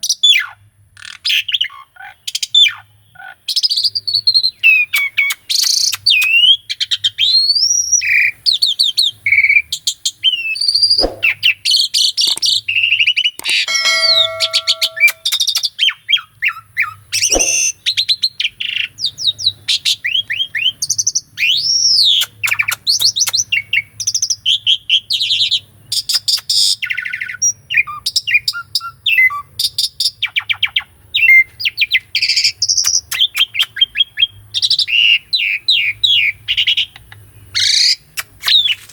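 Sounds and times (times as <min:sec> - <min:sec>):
sharp clicks: 0:13.4 - 0:15.4.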